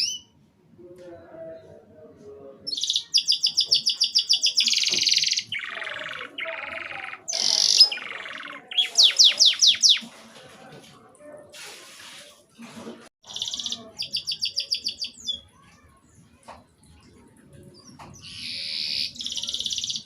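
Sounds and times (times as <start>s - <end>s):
canary singing: 0.0s - 0.4s, 2.6s - 10.1s, 13.2s - 15.9s, 17.6s - 20.0s.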